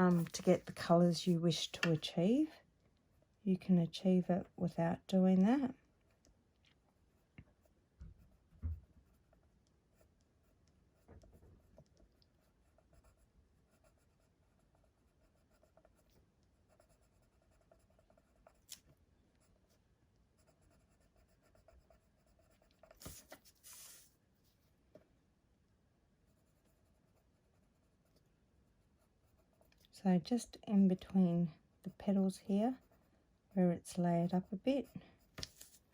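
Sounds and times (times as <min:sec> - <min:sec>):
pencil scratching on card: 0:00.0 - 0:02.1, 0:11.7 - 0:18.8, 0:20.4 - 0:24.1, 0:29.0 - 0:29.8, 0:31.9 - 0:33.1, 0:34.2 - 0:35.9.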